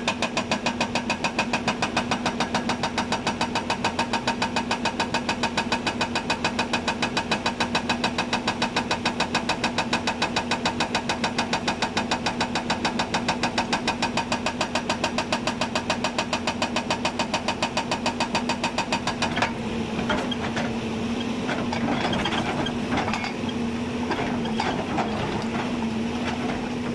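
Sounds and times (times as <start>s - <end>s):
excavator engine running: 16.8s - 26.9s.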